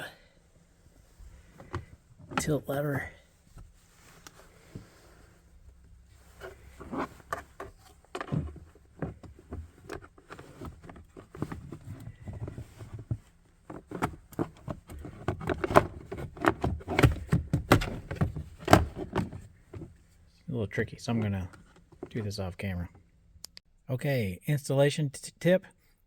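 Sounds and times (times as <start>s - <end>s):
plastic cover clicking and knocking: 7.3s - 19.9s.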